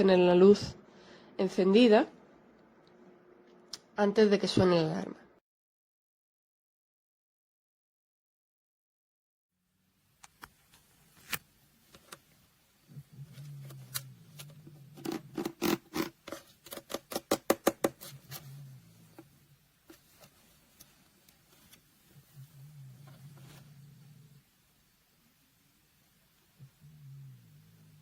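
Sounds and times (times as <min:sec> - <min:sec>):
faint low hum: 0:09.7 - 0:16.8, 0:17.9 - 0:28.0.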